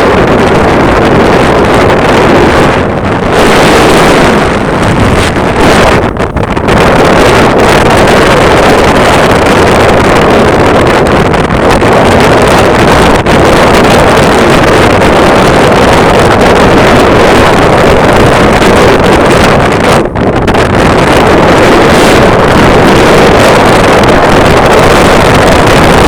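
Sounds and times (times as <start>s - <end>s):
wind buffeting microphone: 0.0s - 26.0s.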